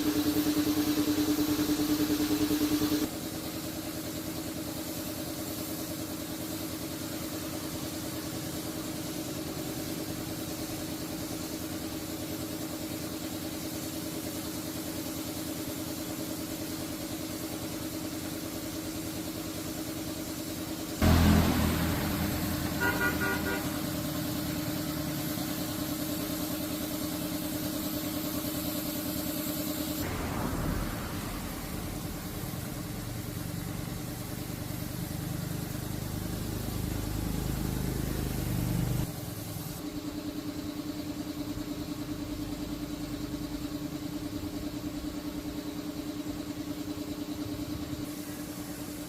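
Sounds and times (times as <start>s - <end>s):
engine idling: 19.4s - 49.0s.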